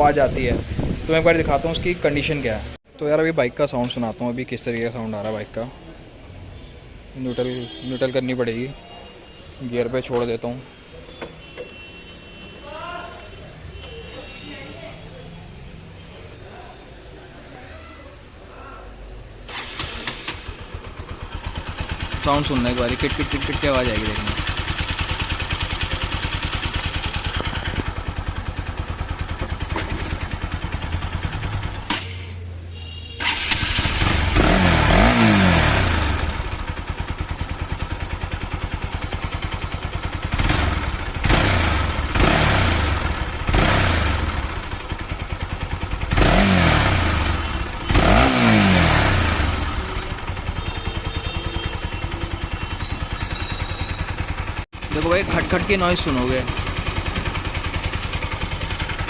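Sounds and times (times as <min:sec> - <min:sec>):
motorcycle engine idling and revving: 0:00.0 - 0:02.8, 0:19.5 - 0:59.0
engine ticking: 0:19.5 - 0:32.3, 0:33.2 - 0:59.0.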